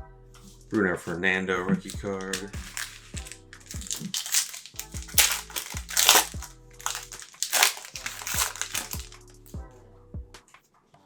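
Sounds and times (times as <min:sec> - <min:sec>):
background music with steady beat: 0:00.0 - 0:10.6
foil wrapper crinkling and tearing: 0:01.9 - 0:09.6.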